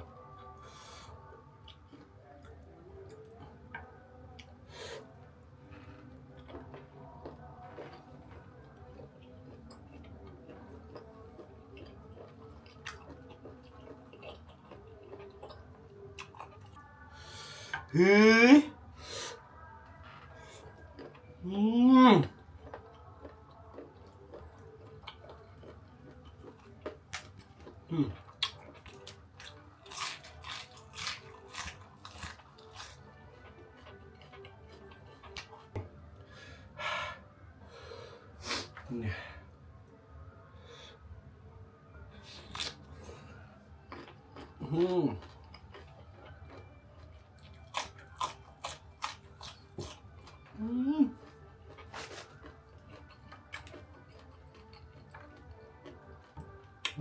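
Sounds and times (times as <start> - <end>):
person chewing crunchy food: 5.7 - 18.2, 19.5 - 35.9, 42.2 - 57.0.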